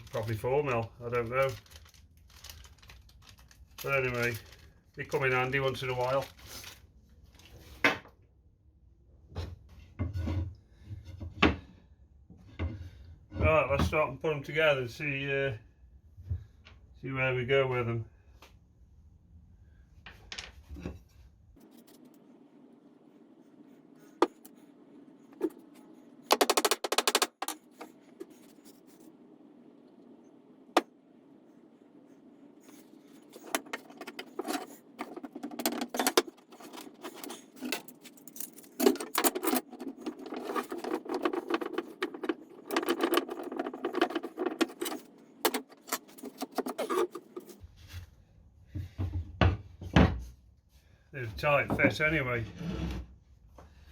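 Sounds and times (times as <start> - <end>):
quick clicks and knocks: 26.3 - 27.9
short wooden rattle: 33.3 - 47.6.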